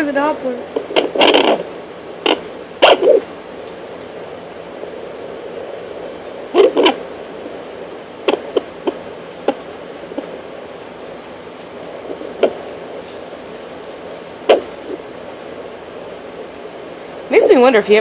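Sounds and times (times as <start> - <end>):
doppler speaker hissing: 0.0 - 17.7
loud thumps and pops: 0.7 - 3.3, 8.2 - 10.3, 12.1 - 12.7, 14.4 - 15.0.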